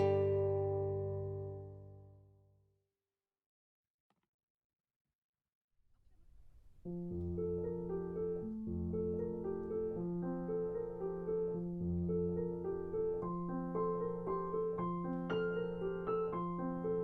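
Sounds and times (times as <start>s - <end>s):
gentle piano tune: 0.0s - 2.2s, 6.8s - 17.0s.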